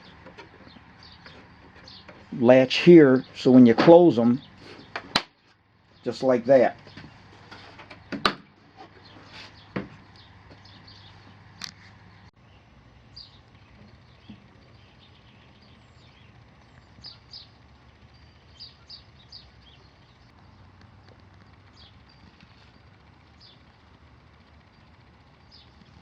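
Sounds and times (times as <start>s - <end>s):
low hum: 0.0s - 26.0s
faint bird chirps: 12.4s - 26.0s.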